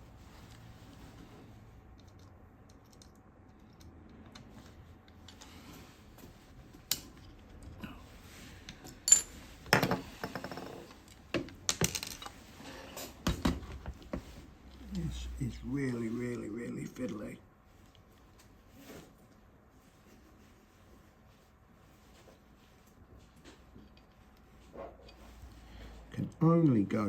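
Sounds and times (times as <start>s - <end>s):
small metal parts clicking: 2.0s - 4.5s.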